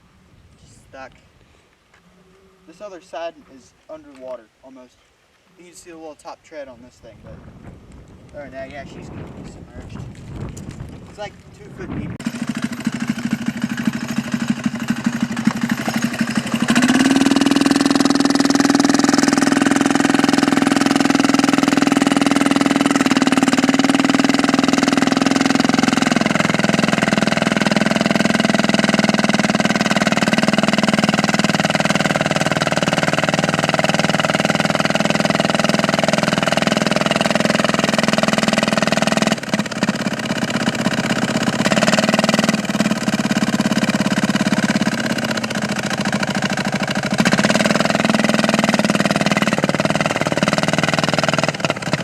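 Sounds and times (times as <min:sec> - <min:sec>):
small diesel engine revving: 0:12.2 - 0:52.0.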